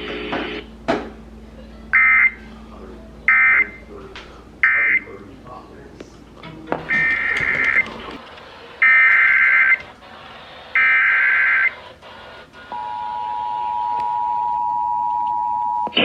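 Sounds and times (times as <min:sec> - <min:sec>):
two-tone attention signal: 0:06.9 - 0:07.9
screechy data tones: 0:06.9 - 0:13.3.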